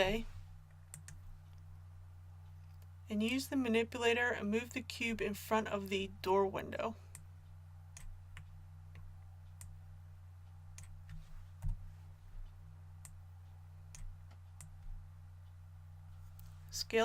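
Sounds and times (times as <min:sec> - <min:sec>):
low electrical hum: 0:00.0 - 0:17.0
computer mouse clicks: 0:00.9 - 0:01.7, 0:10.7 - 0:11.8.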